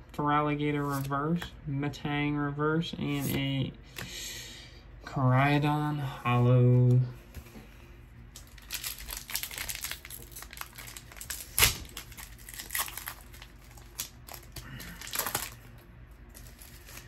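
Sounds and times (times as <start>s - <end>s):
foil wrapper crinkling: 8.3s - 17.0s
foil wrapper ripping: 8.4s - 17.0s.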